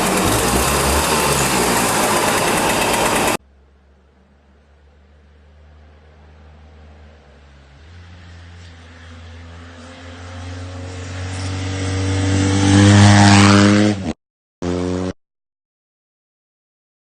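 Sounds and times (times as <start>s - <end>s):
motorcycle engine running: 0.0s - 3.8s.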